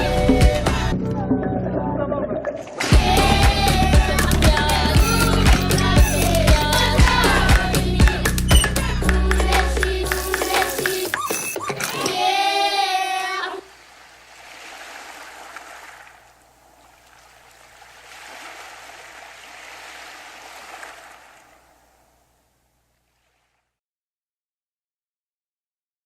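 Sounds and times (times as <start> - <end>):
wavering vocal note: 0.0 - 13.6
water wash: 13.2 - 22.1.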